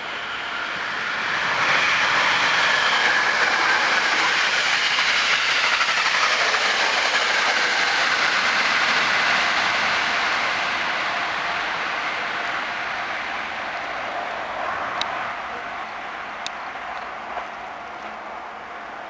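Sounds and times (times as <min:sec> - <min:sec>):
traction motor whine: 0:00.0 - 0:12.9
wheels clattering on rails: 0:00.0 - 0:19.0.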